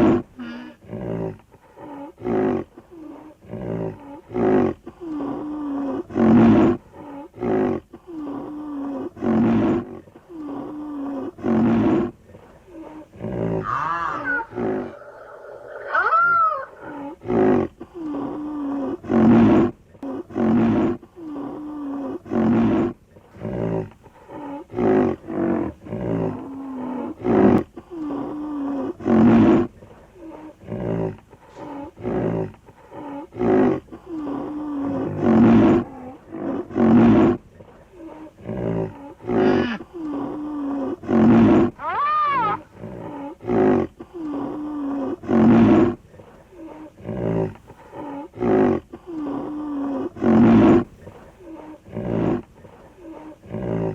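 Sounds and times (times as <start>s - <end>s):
rhinoceros grunting calls: 12.7s - 19.5s, 20.2s - 53.9s.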